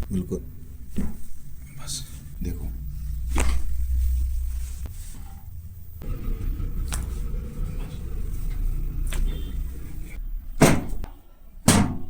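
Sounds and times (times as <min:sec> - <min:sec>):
low rumbling handling noise: 0:00.0 - 0:12.0
sharp thump: 0:10.6 - 0:12.0.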